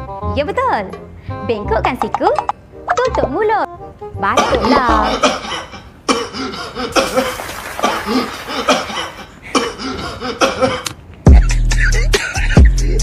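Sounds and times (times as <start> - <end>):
person coughing: 4.4 - 12.0
person laughing: 6.8 - 13.0
music with heavy bass beat: 11.3 - 13.0.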